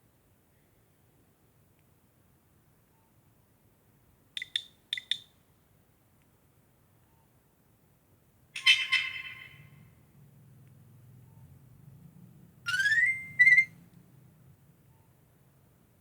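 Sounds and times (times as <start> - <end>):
phone beeps: 12.7 - 13.7.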